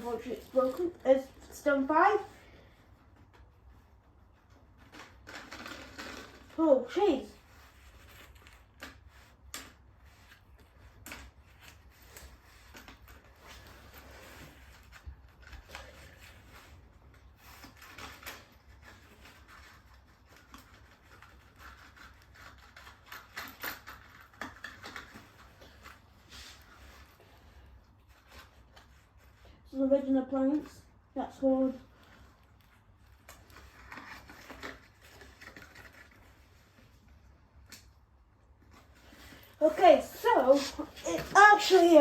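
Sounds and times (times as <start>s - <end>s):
handling noises: 38.5s - 42.0s.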